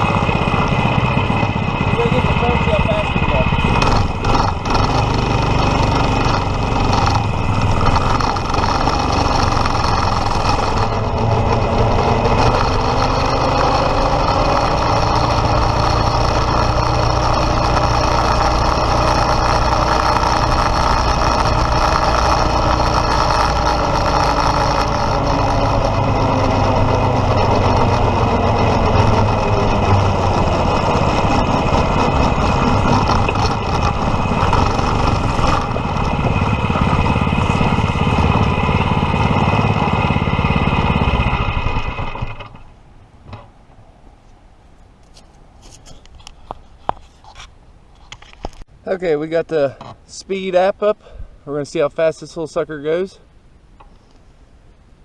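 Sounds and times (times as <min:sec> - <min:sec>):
single-cylinder gas engine running: 0:00.0 - 0:42.6.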